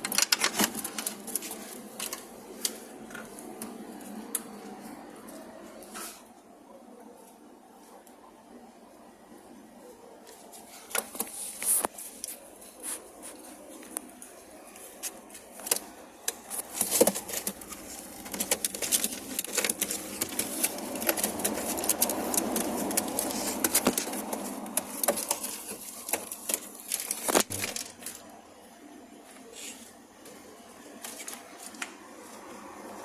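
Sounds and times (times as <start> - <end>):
birds clicking and scratching: 0.0 - 5.5, 10.6 - 28.2
birds rustling: 10.3 - 28.2.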